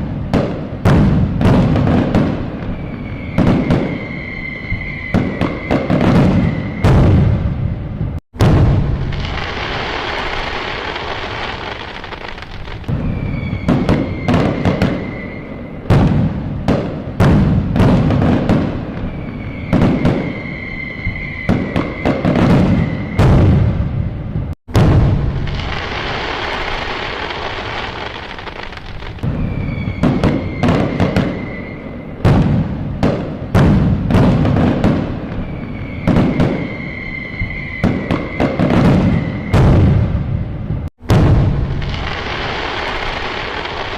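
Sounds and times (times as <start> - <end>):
fireworks whistle: 0.0 - 40.4, 41.1 - 43.9
fireworks bangs: 0.0 - 43.9
fireworks hissing: 8.8 - 17.0, 25.2 - 32.9, 41.6 - 43.9.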